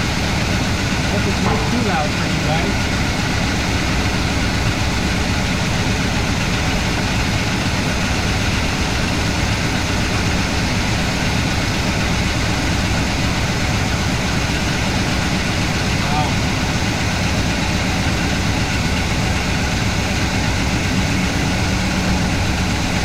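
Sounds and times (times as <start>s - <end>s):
truck engine idling: 0.0s - 23.0s.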